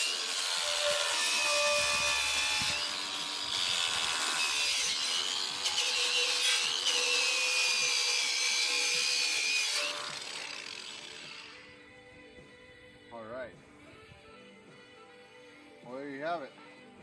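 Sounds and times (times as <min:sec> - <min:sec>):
angle grinder grinding: 0:00.0 - 0:11.7.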